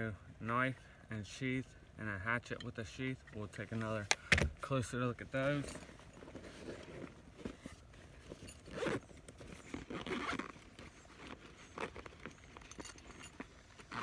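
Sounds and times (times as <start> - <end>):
buckles clicking and straps rustling: 2.5 - 14.0
backpack zipper pulled: 6.4 - 14.0.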